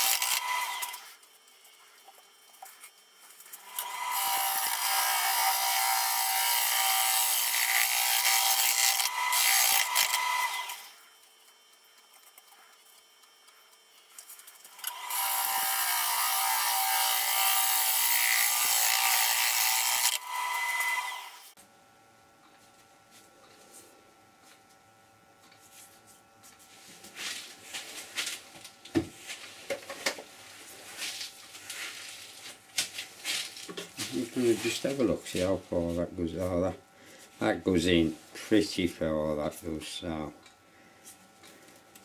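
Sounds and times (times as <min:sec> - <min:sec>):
lathe tool cutting wood: 0:00.0 - 0:01.0, 0:03.6 - 0:11.0, 0:14.7 - 0:21.6.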